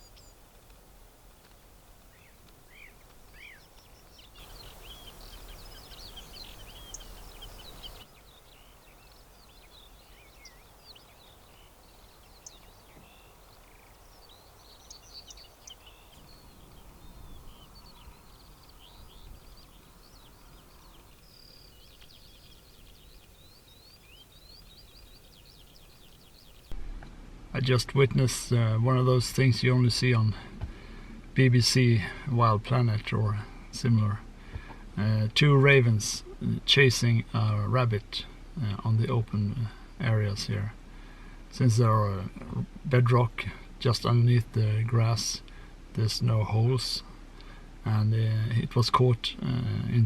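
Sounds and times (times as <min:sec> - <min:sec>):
small birds chirping: 0:00.0 - 0:26.8.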